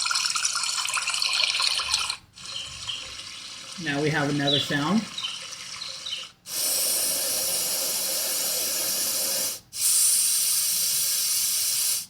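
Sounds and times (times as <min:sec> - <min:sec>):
white noise machine hiss: 0:06.4 - 0:12.0.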